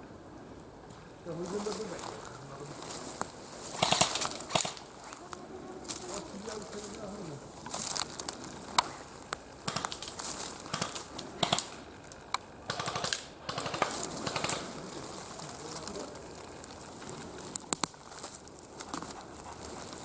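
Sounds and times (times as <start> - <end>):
rustling and crackling: 0.0 - 20.0
sharp clicks: 3.2 - 5.4, 7.6 - 14.8.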